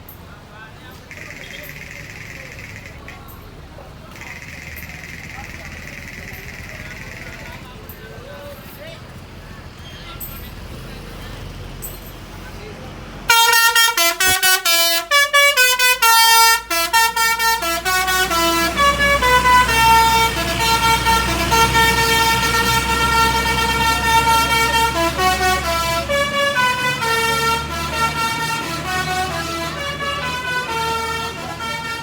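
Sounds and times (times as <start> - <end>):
bus engine hum: 0.0 - 32.0
musical air horn melody: 13.3 - 32.0.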